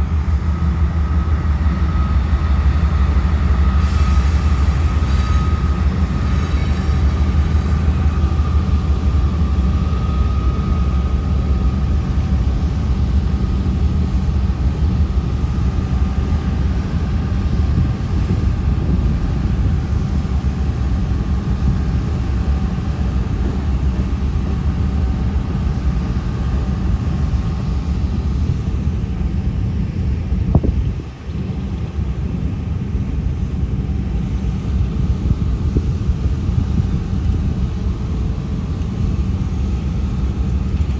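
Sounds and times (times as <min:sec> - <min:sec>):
train wheels rumbling on rail: 0:00.0 - 0:40.9.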